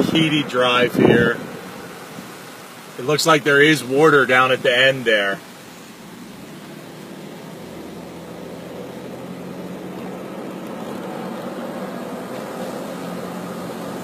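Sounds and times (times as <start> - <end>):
car engine hum: 0.0 - 14.0
road noise: 0.0 - 14.0.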